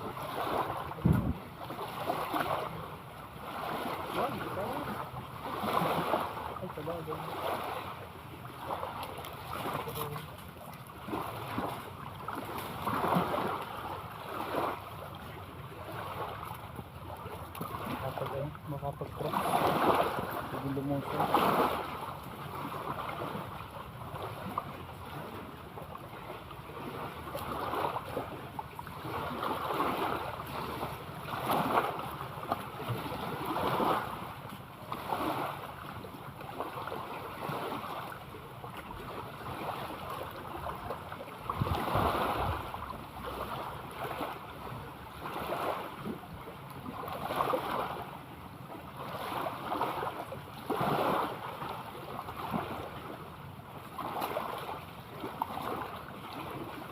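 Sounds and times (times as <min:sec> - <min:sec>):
sea water lapping: 0:00.0 - 0:56.9
wind on microphone: 0:01.0 - 0:01.5, 0:41.5 - 0:42.8.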